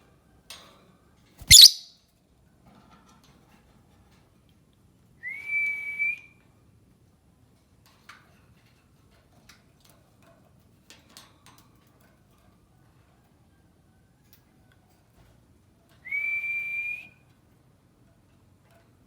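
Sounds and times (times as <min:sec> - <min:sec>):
whistled note: 0:01.4 - 0:01.9.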